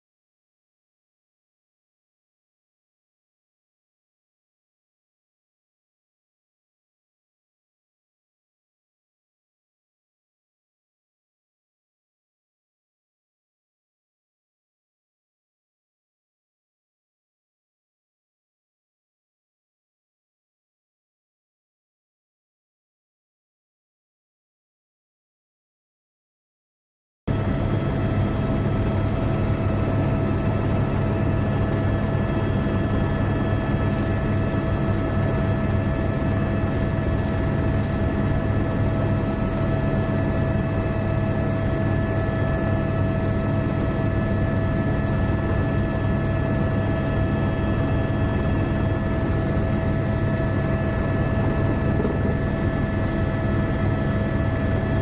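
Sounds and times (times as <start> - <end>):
aircraft engine drone: 27.3 - 55.0.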